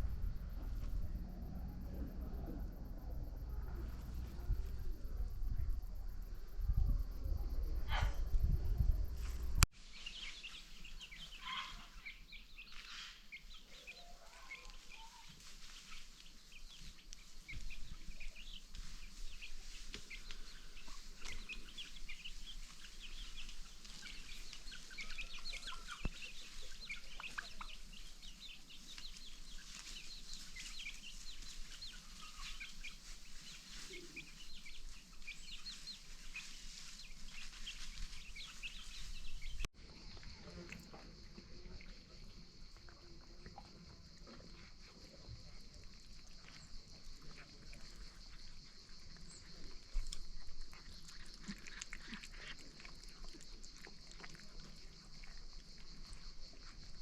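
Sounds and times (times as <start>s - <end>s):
low rumbling noise: 0.0s - 9.6s.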